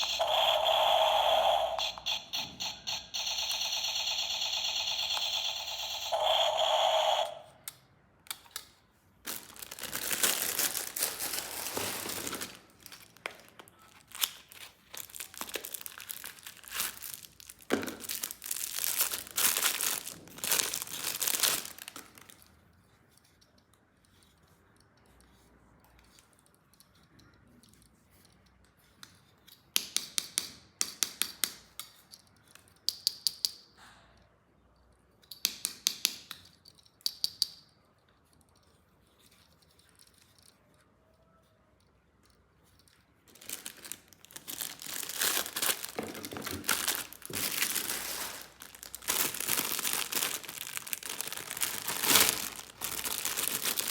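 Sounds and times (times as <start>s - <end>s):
plastic packaging crinkling and tearing: 9.2s - 22.5s, 43.3s - 53.9s.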